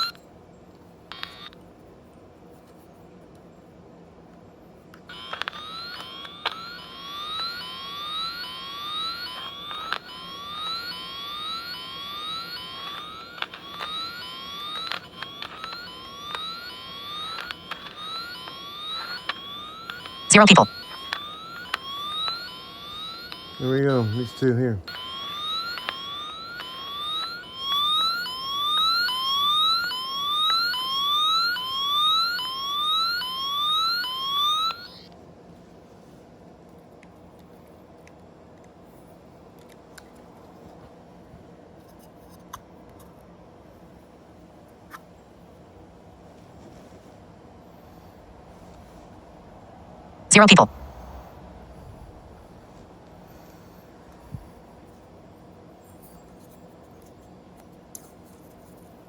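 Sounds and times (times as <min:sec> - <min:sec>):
rising electronic chirp: 0:05.1 - 0:34.9, 0:50.3 - 0:50.7
sharp clicks: 0:09.0 - 0:23.6, 0:50.3 - 0:50.7.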